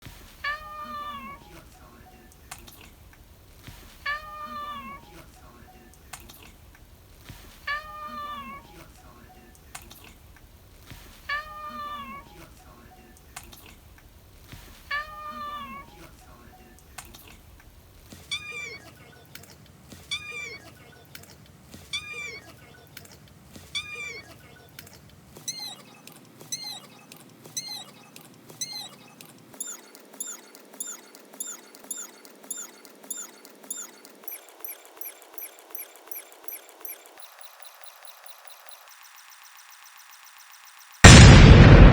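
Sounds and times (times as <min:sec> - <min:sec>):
looped cat meow: 0:00.4 - 0:01.7, 0:04.0 - 0:05.2, 0:07.7 - 0:08.8, 0:11.3 - 0:12.5, 0:14.9 - 0:16.2, 0:18.3 - 0:18.9, 0:20.1 - 0:20.7, 0:21.9 - 0:22.5, 0:23.7 - 0:24.3.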